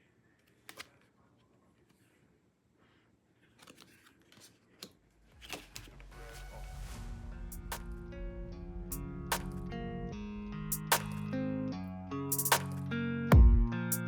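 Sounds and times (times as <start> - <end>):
packaging clicks and rustles: 3.4 - 6.1
music: 5.4 - 14.0.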